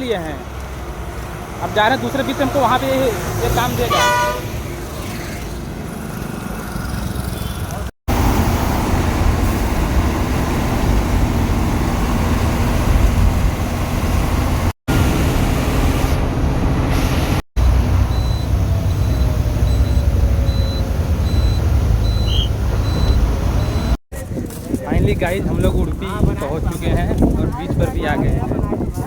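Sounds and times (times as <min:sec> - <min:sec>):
bus engine rumbling: 0:00.0 - 0:29.0
faint high beep: 0:18.1 - 0:24.0.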